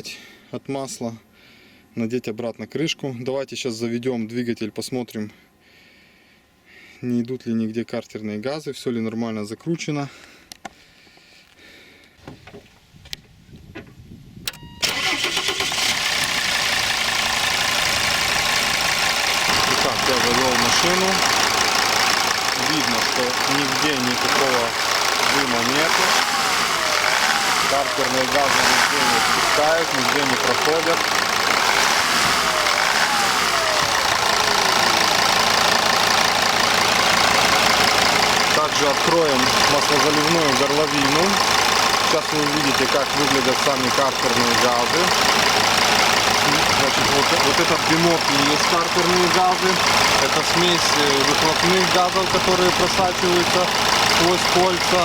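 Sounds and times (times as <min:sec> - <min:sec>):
diesel engine starting and idling: 0:14.6 - 0:55.0.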